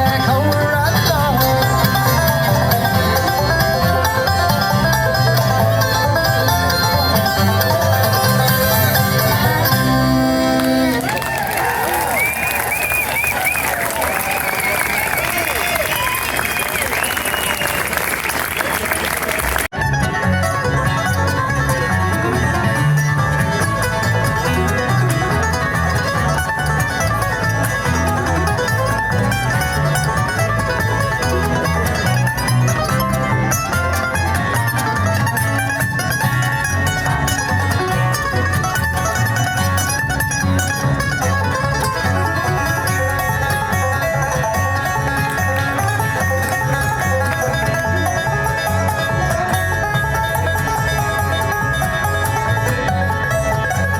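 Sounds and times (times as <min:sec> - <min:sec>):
banjo picking: 0:00.0 - 0:16.2, 0:18.3 - 0:53.9
bluegrass band playing: 0:00.0 - 0:53.9.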